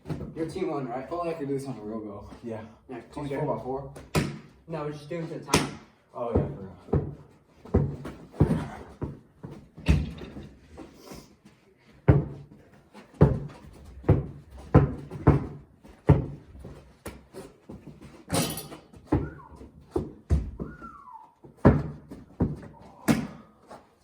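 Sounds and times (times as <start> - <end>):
basketball bouncing on hard floor: 0.0 - 0.4, 6.4 - 10.5, 12.1 - 12.6, 13.2 - 17.2, 17.8 - 20.8, 21.6 - 23.4.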